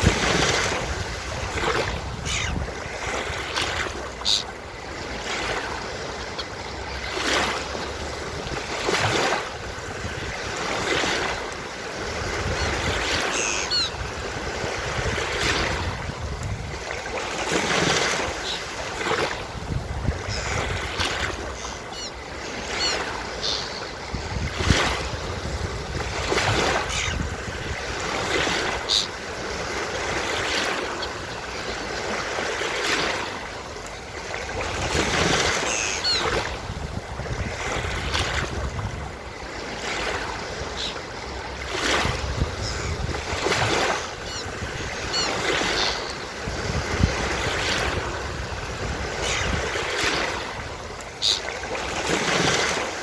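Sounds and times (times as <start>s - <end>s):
ocean surf breaking on beach: 0.0s - 53.0s
seagulls calling: 2.2s - 2.7s, 4.1s - 4.7s, 12.3s - 14.2s, 17.9s - 18.9s, 20.1s - 24.2s, 26.6s - 29.3s, 35.3s - 36.6s, 40.3s - 41.2s, 42.4s - 46.5s, 49.0s - 49.8s, 50.9s - 51.6s.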